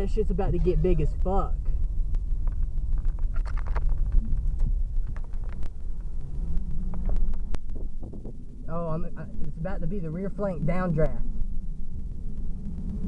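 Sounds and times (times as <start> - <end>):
wind buffeting microphone: 0.0 - 13.0
faint clicks and crackles: 1.2 - 9.6, 11.1 - 13.0.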